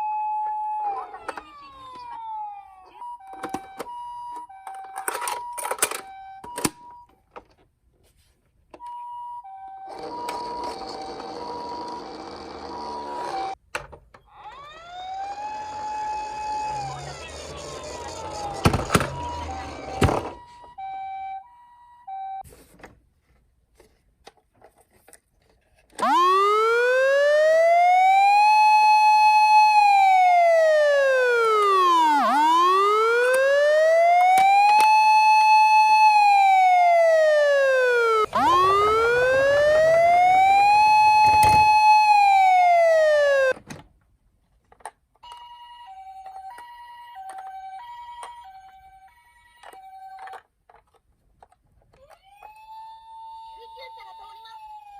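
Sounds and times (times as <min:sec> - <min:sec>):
toy siren wailing: 0:00.0 - 0:06.8, 0:14.3 - 0:22.4, 0:26.0 - 0:43.6, 0:51.9 - 0:54.9
two-tone ambulance siren: 0:00.0 - 0:07.0, 0:14.4 - 0:22.4, 0:26.0 - 0:43.6, 0:52.2 - 0:54.9
thumps: 0:36.9 - 0:43.5.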